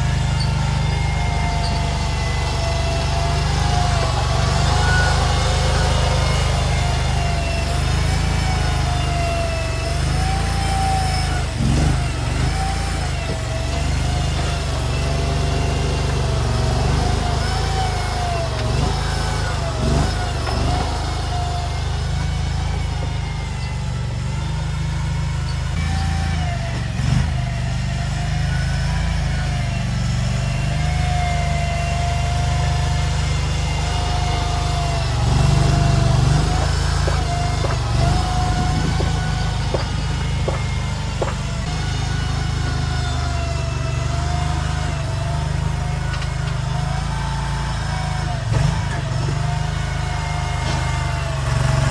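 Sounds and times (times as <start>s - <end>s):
thin wavering whine: 0.0s - 11.4s
wavering whine: 0.0s - 27.2s
skid steer engine running: 0.0s - 51.9s.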